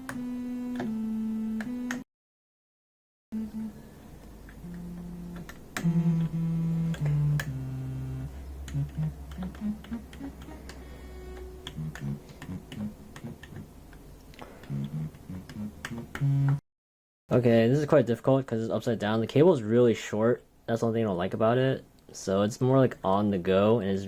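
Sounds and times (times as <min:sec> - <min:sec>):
low synthesized keyboard notes: 0:00.0 - 0:02.0, 0:03.4 - 0:13.8, 0:14.6 - 0:16.6.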